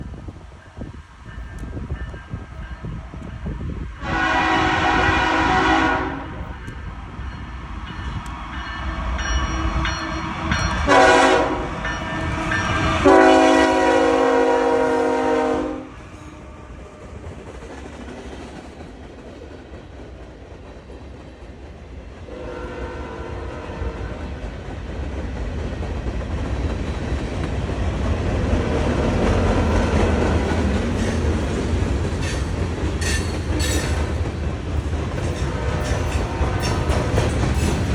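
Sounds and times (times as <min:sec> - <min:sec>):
train rumble and rail clatter: 0:00.0 - 0:37.9
locomotive air horn blasts: 0:04.0 - 0:06.6, 0:10.8 - 0:17.0, 0:22.3 - 0:24.3.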